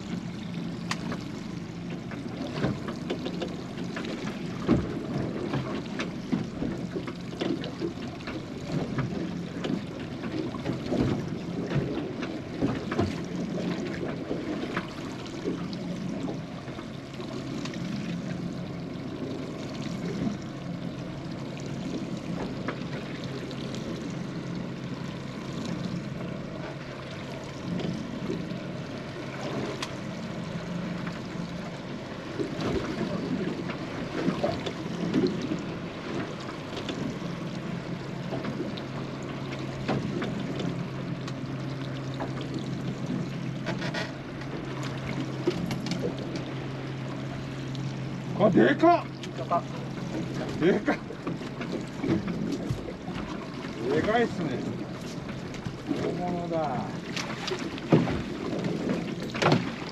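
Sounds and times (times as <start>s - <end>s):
water sloshing against a hull: 0.0s - 59.9s.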